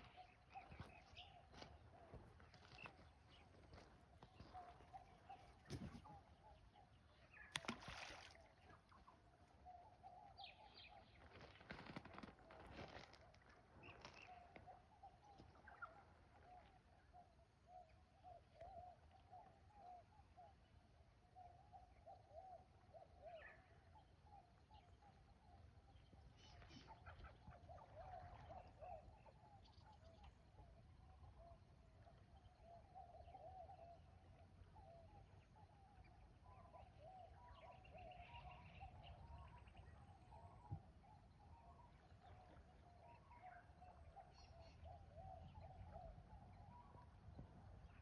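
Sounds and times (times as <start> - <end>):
bird calls: 2.6 - 9.2, 21.4 - 48.0.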